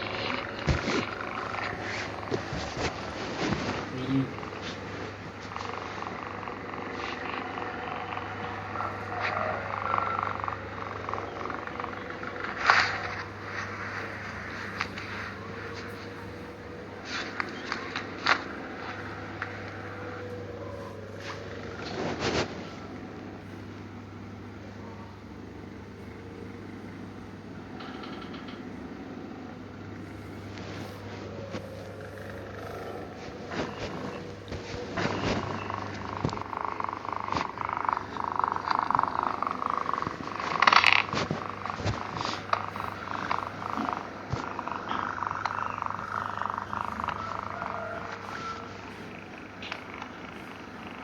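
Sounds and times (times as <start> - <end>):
cat snoring purring rattle: 0.0 - 24.7, 25.3 - 51.0
steady low hum: 0.0 - 51.0
cat snoring softly: 29.9 - 51.0.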